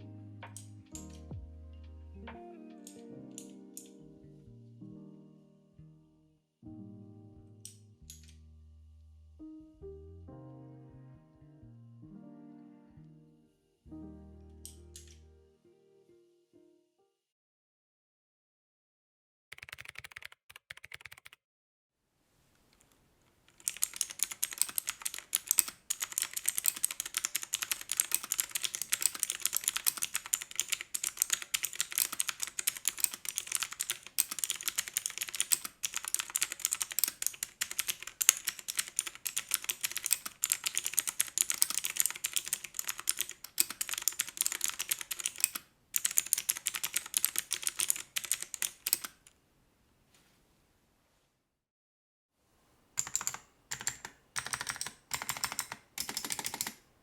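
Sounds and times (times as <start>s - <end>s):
mechanical keyboard typing: 19.5s - 21.4s, 23.5s - 49.3s, 53.0s - 56.8s.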